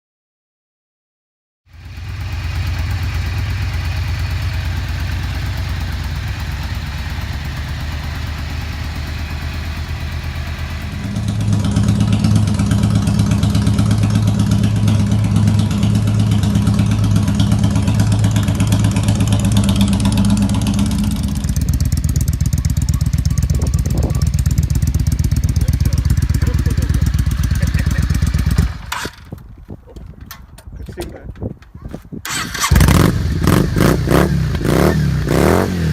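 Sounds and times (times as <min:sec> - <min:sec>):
motorcycle engine idling: 0:01.7 - 0:28.9.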